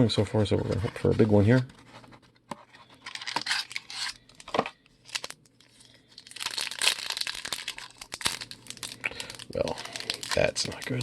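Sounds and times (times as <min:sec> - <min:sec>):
wrapper tearing and crinkling: 0:03.0 - 0:11.0.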